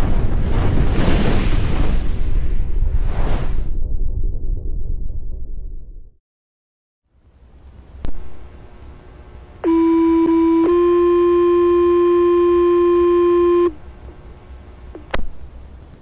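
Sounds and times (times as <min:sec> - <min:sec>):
two-tone paging alert: 0:09.6 - 0:13.8
radio click: 0:14.9 - 0:15.3.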